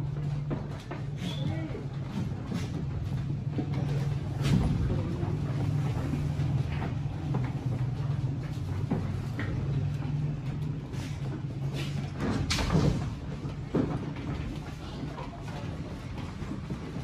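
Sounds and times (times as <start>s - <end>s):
knocks and clatters: 0.0s - 17.0s.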